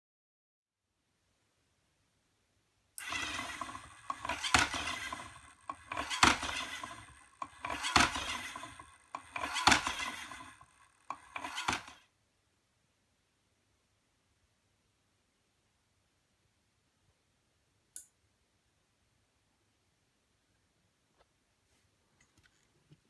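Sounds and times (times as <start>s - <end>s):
alarm robot knocking and rattling: 3.0s - 12.0s.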